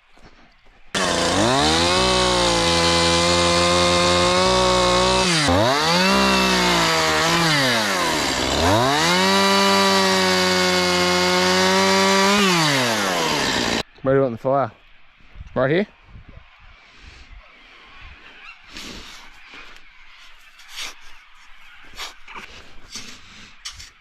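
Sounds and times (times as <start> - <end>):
chainsaw revving: 1.0 - 13.8.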